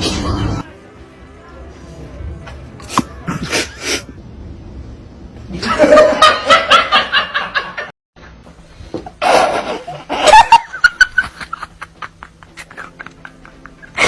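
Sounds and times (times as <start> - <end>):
person laughing hard: 9.2 - 14.0.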